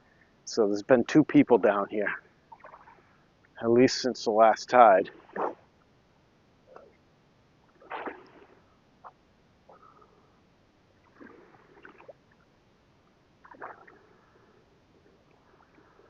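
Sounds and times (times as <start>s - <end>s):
soft water splashes: 2.5s - 3.1s, 7.8s - 8.7s, 11.0s - 12.6s, 13.4s - 16.0s
small waves lapping: 7.8s - 8.7s, 11.0s - 12.5s, 13.4s - 16.0s.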